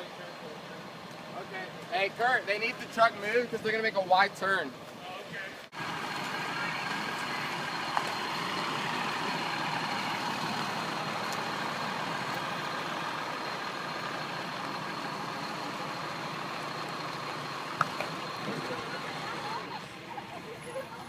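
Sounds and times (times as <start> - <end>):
truck engine running: 5.7 - 21.0.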